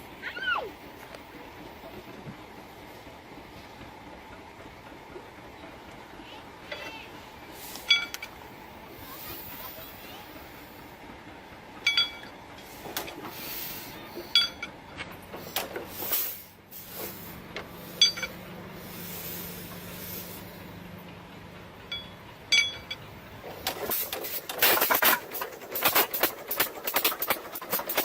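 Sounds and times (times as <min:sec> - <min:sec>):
sharp metallic clinks: 0:07.9 - 0:08.4, 0:11.8 - 0:12.4, 0:14.3 - 0:14.8, 0:18.0 - 0:18.4, 0:21.9 - 0:23.1
steady hiss: 0:12.6 - 0:14.3, 0:15.4 - 0:20.9.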